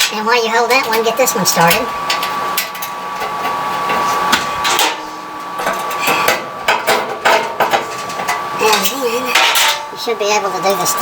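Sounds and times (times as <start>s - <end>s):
sheet metal parts tapping: 1.7s - 9.9s.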